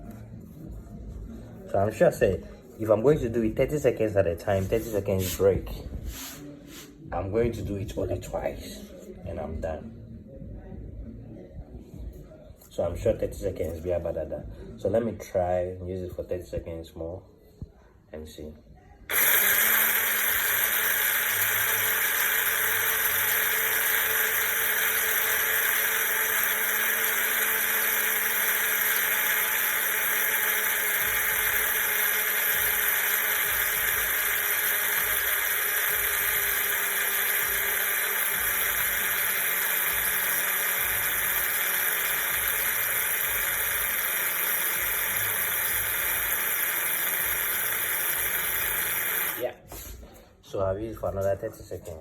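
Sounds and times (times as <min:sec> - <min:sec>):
coffee grinder whirring: 0:19.1 - 0:49.8.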